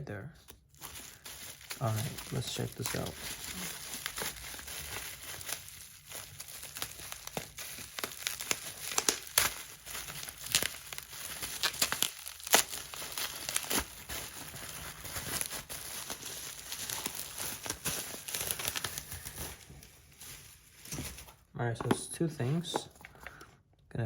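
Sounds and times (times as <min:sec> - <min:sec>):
packaging crinkling and rustling: 0:00.4 - 0:23.4
packaging snapping: 0:00.5 - 0:19.6.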